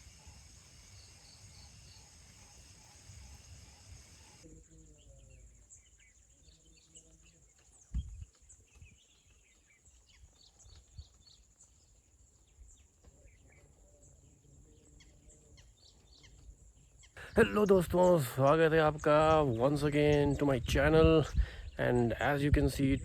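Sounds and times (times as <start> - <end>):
high insect drone: 0.0 - 6.1
bird chirps: 0.0 - 23.0.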